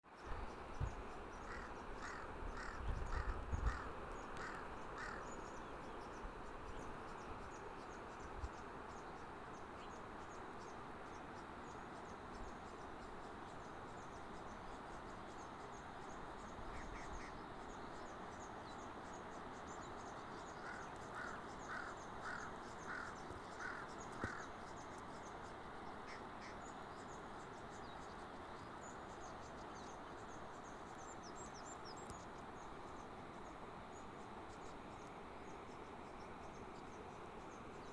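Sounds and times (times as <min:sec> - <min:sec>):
background hiss: 0:00.1 - 0:37.9
bird calling: 0:01.4 - 0:05.7, 0:20.5 - 0:24.6.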